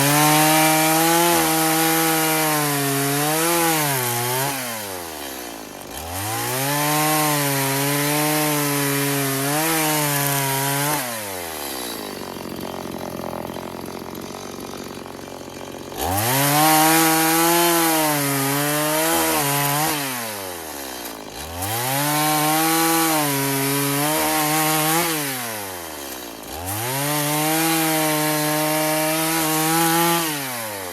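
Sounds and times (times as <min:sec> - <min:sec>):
chainsaw revving: 0:00.0 - 0:30.9.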